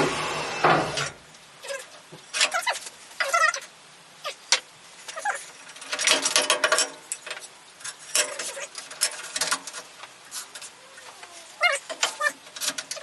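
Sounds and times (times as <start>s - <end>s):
clicks knocks and rustling: 5.7s - 10.7s.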